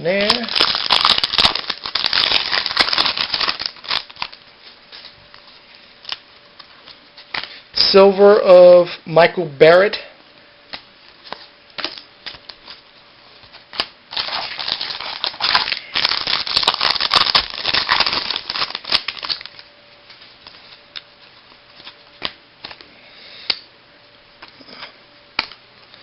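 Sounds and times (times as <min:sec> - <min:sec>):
card pack rustling and crinkling: 0:00.0 - 0:07.6, 0:11.2 - 0:22.8.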